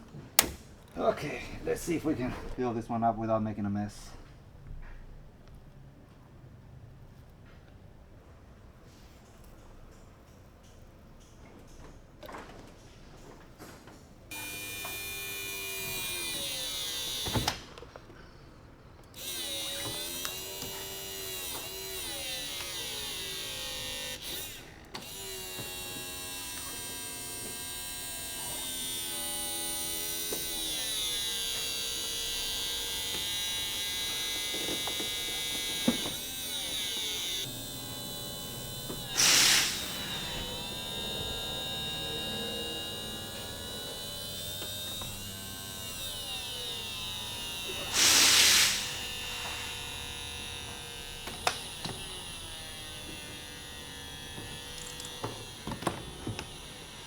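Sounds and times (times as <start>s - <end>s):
hydraulic pump whining: 0.0s - 2.8s, 14.3s - 18.2s, 19.1s - 57.0s
short loud burst of noise: 39.0s - 42.3s, 47.9s - 49.6s.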